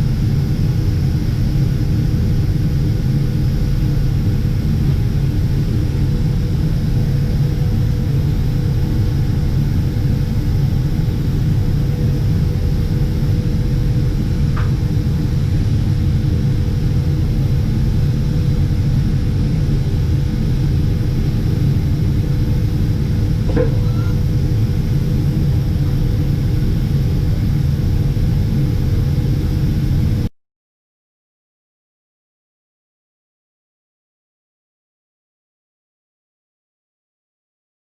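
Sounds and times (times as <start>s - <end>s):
machinery hum: 0.0s - 30.3s.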